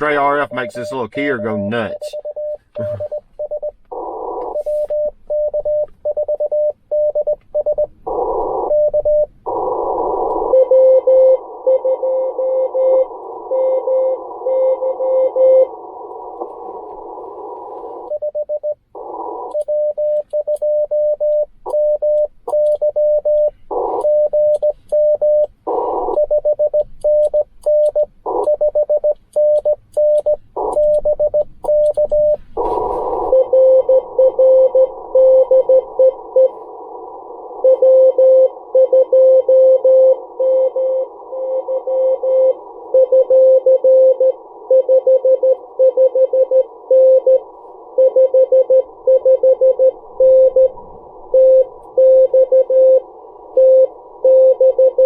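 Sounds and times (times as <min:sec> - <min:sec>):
radio band hiss: 0:00.0 - 0:02.2, 0:03.9 - 0:05.0, 0:15.7 - 0:18.1, 0:25.6 - 0:26.1, 0:32.2 - 0:34.2, 0:35.8 - 0:37.6
morse code tones: 0:00.0 - 0:36.7, 0:37.5 - 0:55.0.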